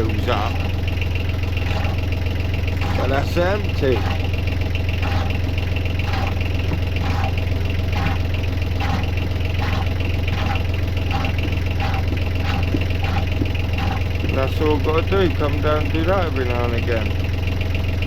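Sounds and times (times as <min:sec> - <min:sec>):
boat engine idling: 0:00.0 - 0:18.0.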